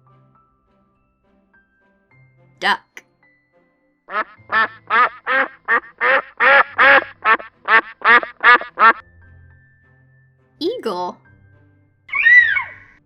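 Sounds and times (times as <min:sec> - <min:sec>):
duck quacking: 0:04.1 - 0:09.0.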